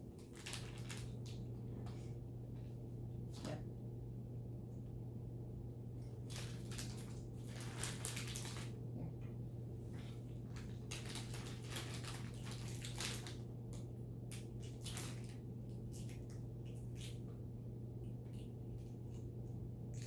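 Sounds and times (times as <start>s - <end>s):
rustling and crinkling: 0.0s - 3.7s, 6.0s - 13.4s, 14.3s - 17.3s
steady low hum: 0.0s - 20.0s.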